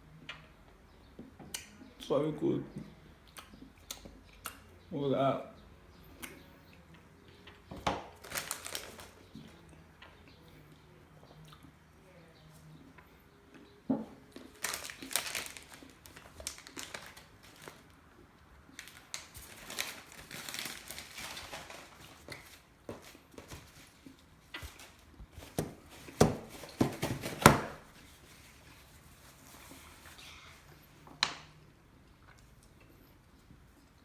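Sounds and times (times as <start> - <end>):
wrapper crinkling and rustling: 8.1 - 9.4, 14.4 - 18.0, 18.7 - 30.2.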